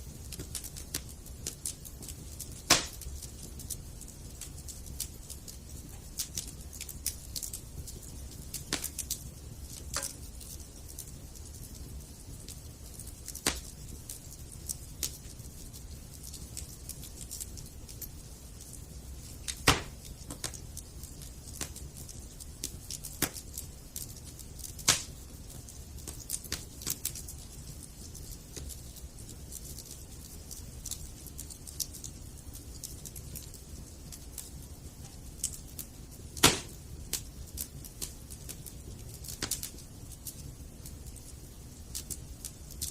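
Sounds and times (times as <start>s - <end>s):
campfire crackling and popping: 0.0s - 42.9s
low steady fire rumble: 0.0s - 42.9s.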